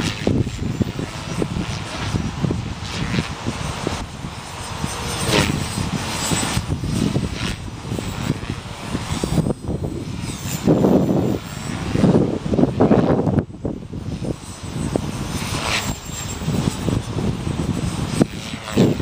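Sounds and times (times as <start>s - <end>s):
rc helicopter rotor whine: 0.0s - 19.0s
wind buffeting microphone: 0.0s - 19.0s.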